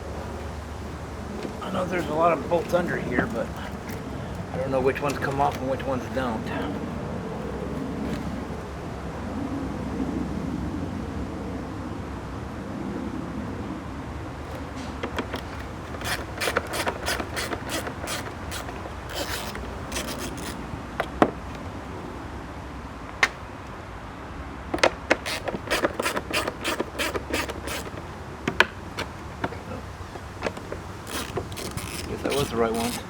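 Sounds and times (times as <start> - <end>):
ratchet wrench clicking: 15.1 - 20.6, 25.1 - 29.1, 30.4 - 33.0.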